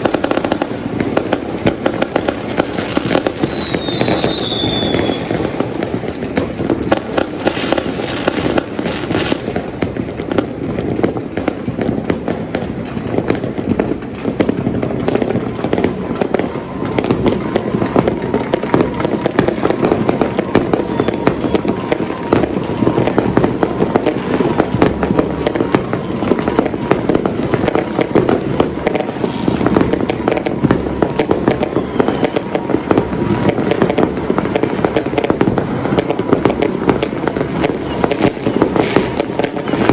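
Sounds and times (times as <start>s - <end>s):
firecrackers cracking and banging: 0.0s - 39.9s.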